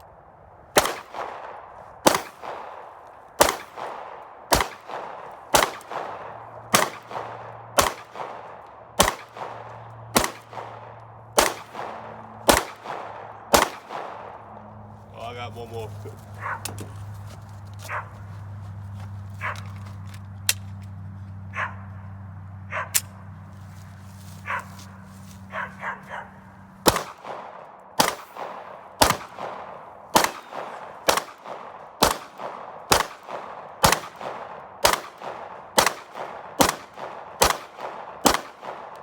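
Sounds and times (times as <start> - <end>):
steady low hum: 0.0 - 39.0
pistol shots: 0.7 - 14.4, 26.8 - 39.0
dog barking: 16.4 - 16.8, 17.8 - 18.2, 19.4 - 19.7, 21.5 - 21.9, 22.7 - 23.0, 24.4 - 24.8, 25.5 - 26.4.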